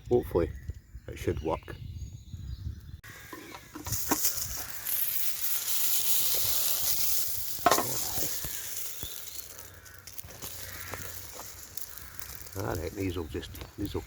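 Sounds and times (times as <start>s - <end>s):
pizza sizzling over campfire: 3.0s - 14.0s.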